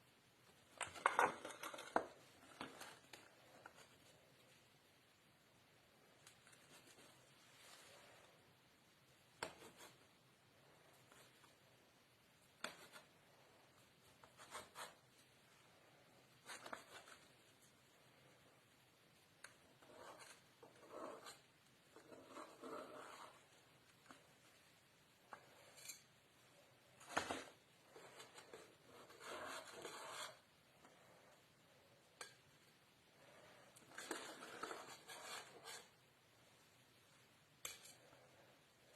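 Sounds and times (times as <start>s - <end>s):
utensil scraping a dish: 19.8s - 23.4s, 27.9s - 30.4s.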